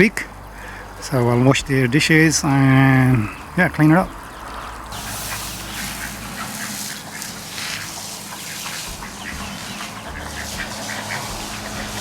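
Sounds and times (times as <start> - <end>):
ducks quacking: 3.4 - 12.0
water rushing into pond: 4.5 - 12.0.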